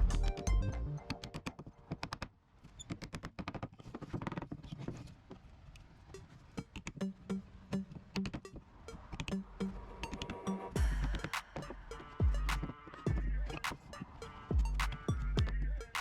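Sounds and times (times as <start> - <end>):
background music: 0.0 - 1.9, 9.0 - 16.0.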